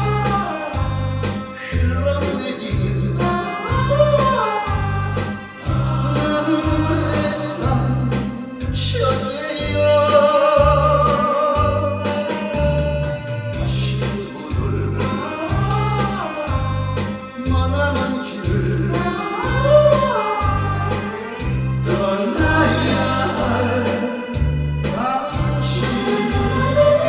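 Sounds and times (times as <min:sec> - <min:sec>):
instrumental accompaniment: 0:00.0 - 0:27.0
steady bass beat: 0:00.0 - 0:27.0
group singing: 0:02.4 - 0:17.4, 0:18.4 - 0:27.0.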